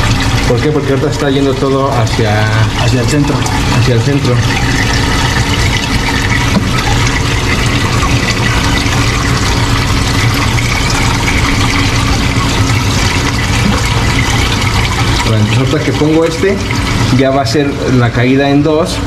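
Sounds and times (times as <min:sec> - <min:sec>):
water splashing into sump: 0:00.0 - 0:18.1
low hum: 0:00.0 - 0:19.0.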